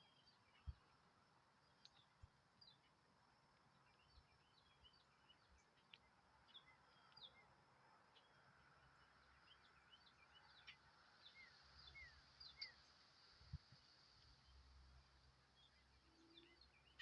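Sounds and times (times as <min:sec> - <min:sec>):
low background hiss: 0:00.0 - 0:17.0
small birds chirping: 0:00.0 - 0:17.0.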